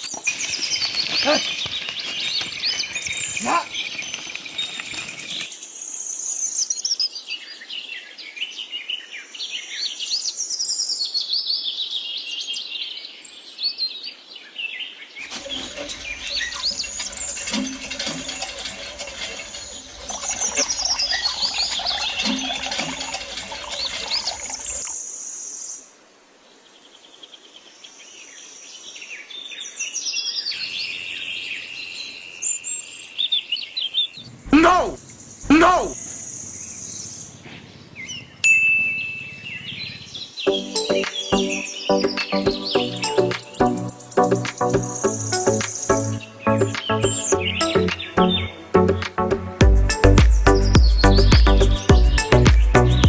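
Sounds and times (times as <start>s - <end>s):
small birds chirping: 0.0s - 8.4s, 14.1s - 25.8s, 29.6s - 48.5s, 49.6s - 53.0s.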